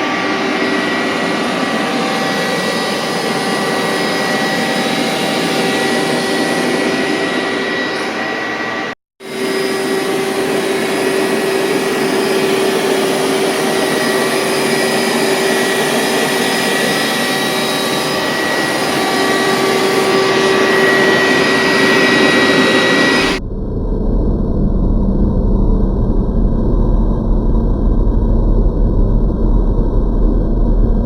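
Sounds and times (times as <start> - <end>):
carpet cleaner whirring: 0.0 - 23.4
low hum: 0.0 - 31.0.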